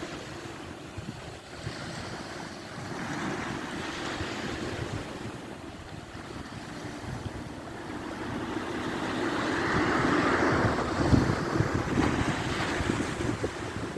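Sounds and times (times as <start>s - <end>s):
sea surf rushing: 0.0s - 13.9s
wind buffeting microphone: 0.0s - 13.9s
low thuds from gusts: 5.9s - 13.9s.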